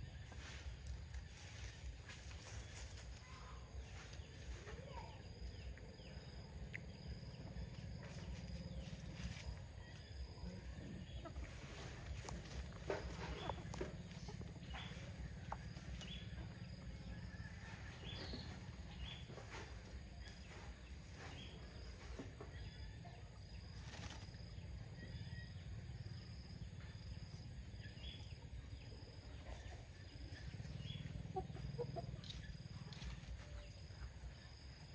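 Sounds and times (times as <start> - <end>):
chickens clucking: 5.6 - 24.2, 28.2 - 33.8.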